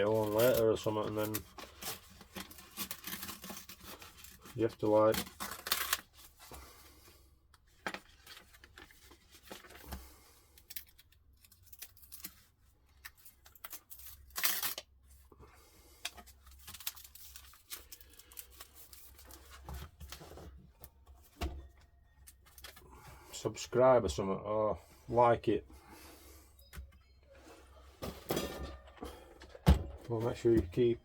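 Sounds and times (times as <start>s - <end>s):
pages crackling and rustling: 0.0s - 6.4s, 16.2s - 20.5s.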